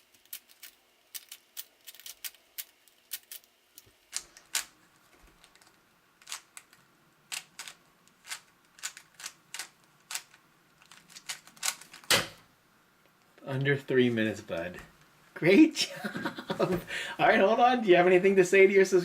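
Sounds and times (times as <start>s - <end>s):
puzzle cube plastic clicks: 0.0s - 4.7s, 5.3s - 12.3s.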